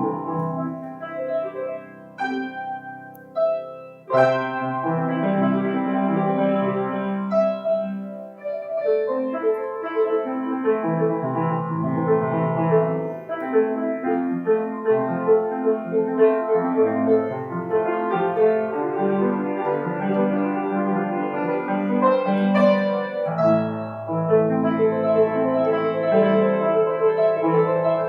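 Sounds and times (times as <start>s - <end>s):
calm piano piece: 0.0s - 28.0s.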